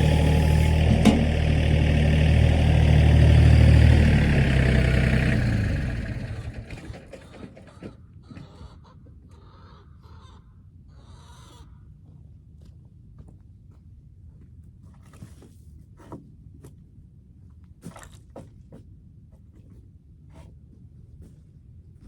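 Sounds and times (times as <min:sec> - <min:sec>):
engine humming: 0:00.0 - 0:07.8.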